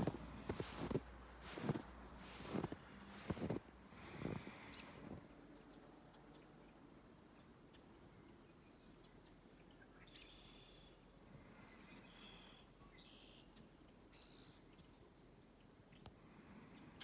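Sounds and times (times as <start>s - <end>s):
faint bird chirps and trills: 0.5s - 1.7s, 4.6s - 17.0s.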